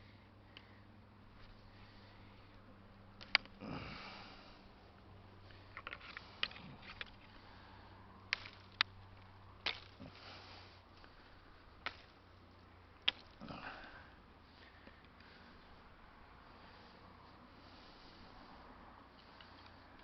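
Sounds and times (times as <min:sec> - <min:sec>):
rustling through brush: 0:00.0 - 0:20.0
sharp clicks: 0:03.2 - 0:03.6.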